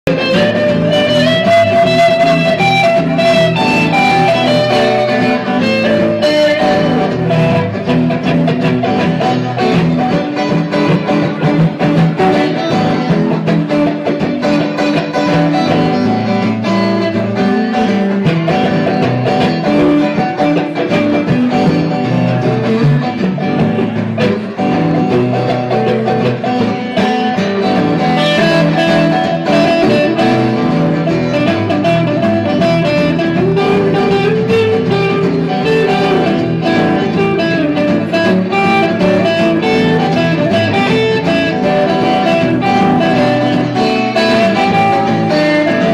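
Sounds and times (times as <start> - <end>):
guitar-led live band: 0.0 - 45.9.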